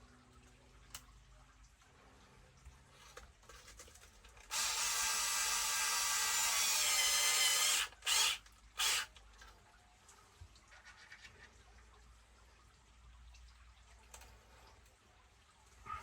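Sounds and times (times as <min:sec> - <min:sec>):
cordless drill driving screw: 0:04.5 - 0:09.2.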